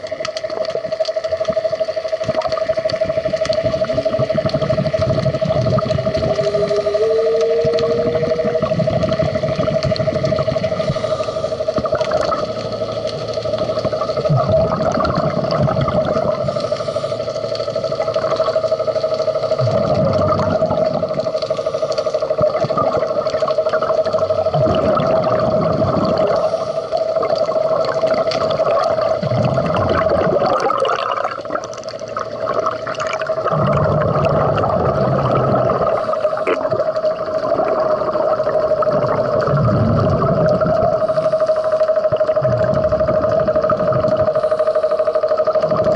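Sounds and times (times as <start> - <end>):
underwater mechanical tone: 0.0 - 45.9
diver exhaling bubbles: 3.7 - 12.7, 13.8 - 17.3, 19.6 - 41.3.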